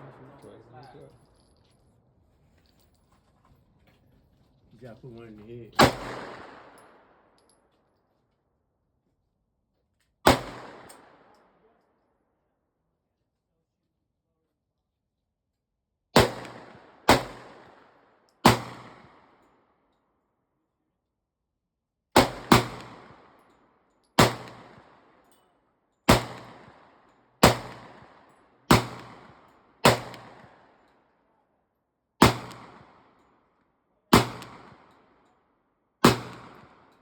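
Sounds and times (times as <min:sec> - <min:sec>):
gunshots echoing: 0:05.8 - 0:06.8, 0:10.3 - 0:11.2, 0:16.2 - 0:17.9, 0:18.5 - 0:19.2, 0:22.2 - 0:23.4, 0:24.2 - 0:25.0, 0:26.1 - 0:26.8, 0:27.4 - 0:30.7, 0:32.2 - 0:33.0, 0:34.1 - 0:34.9, 0:36.0 - 0:36.8.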